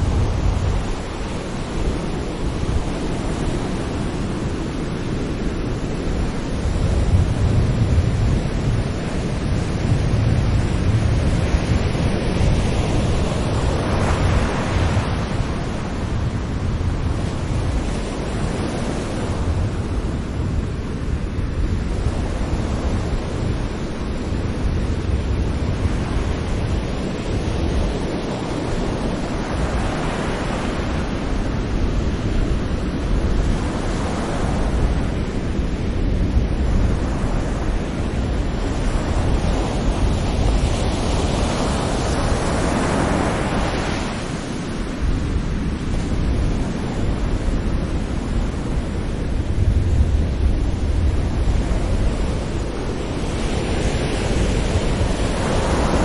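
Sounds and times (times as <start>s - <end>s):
sea waves breaking on beach: 0.0s - 56.0s.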